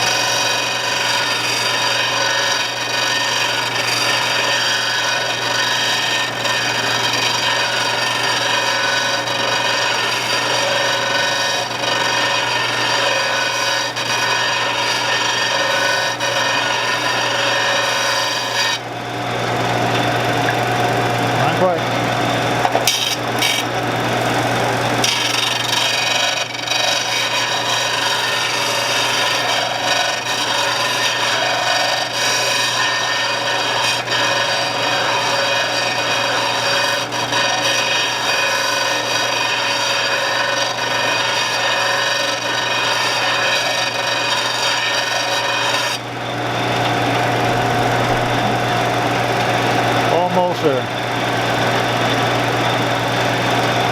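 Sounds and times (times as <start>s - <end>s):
harsh grinding rasp: 0.0s - 53.9s
motor hum: 5.4s - 28.9s, 45.2s - 53.9s.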